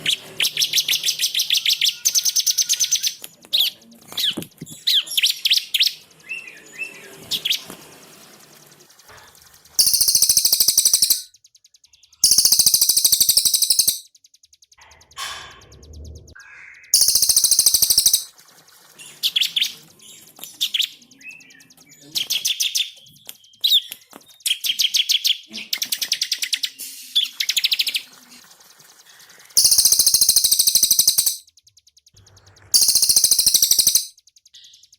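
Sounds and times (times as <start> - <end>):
bird chirps: 9.1 - 18.3, 29.6 - 34.9
bird rapid high trills: 9.8 - 11.3, 12.2 - 14.1, 17.0 - 18.3, 29.6 - 31.4, 32.8 - 34.1.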